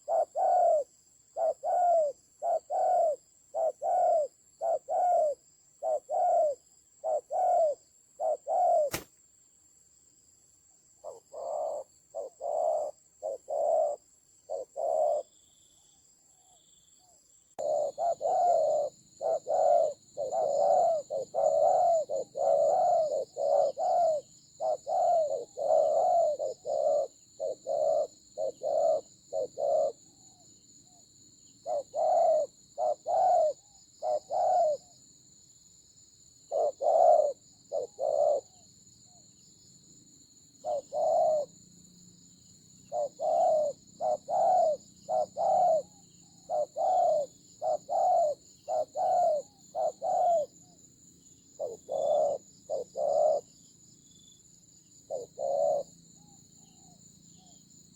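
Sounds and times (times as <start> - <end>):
doves cooing: 0.0 - 9.0, 11.0 - 15.3, 17.6 - 30.2, 31.6 - 35.0, 36.5 - 38.6, 40.6 - 41.5, 42.9 - 50.6, 51.5 - 53.5, 55.1 - 55.9.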